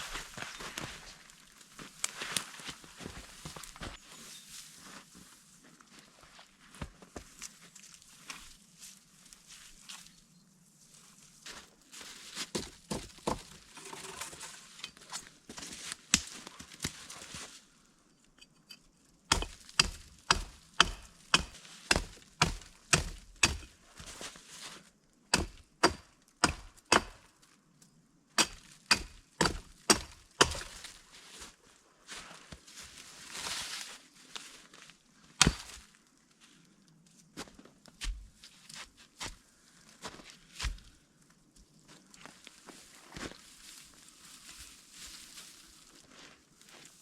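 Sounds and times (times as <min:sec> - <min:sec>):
wood being chopped: 0:12.5 - 0:13.6, 0:19.3 - 0:23.8, 0:25.3 - 0:27.2, 0:28.4 - 0:30.9, 0:35.4 - 0:35.8.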